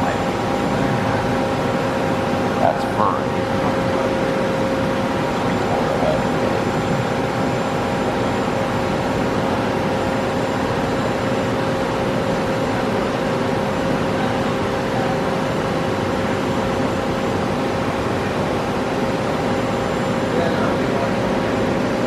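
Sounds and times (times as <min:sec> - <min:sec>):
lathe machine hum and whine: 0:00.0 - 0:22.0.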